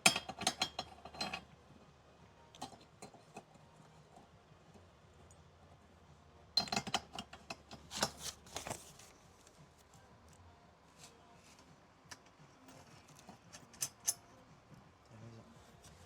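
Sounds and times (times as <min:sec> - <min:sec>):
clinks and rattles of hardware: 0:00.0 - 0:01.5, 0:06.6 - 0:08.2, 0:13.2 - 0:14.2.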